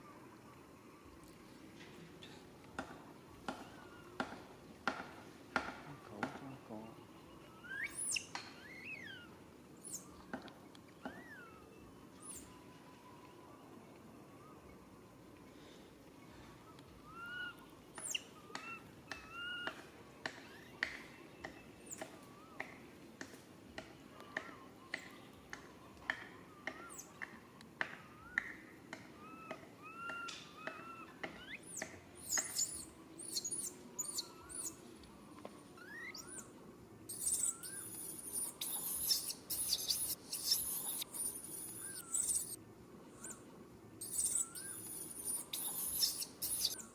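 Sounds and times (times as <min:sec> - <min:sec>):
baby monkey calling: 0:17.1 - 0:19.7, 0:29.2 - 0:34.8, 0:37.1 - 0:42.6, 0:44.0 - 0:46.8
baby monkey screaming: 0:37.1 - 0:42.6, 0:44.0 - 0:46.8.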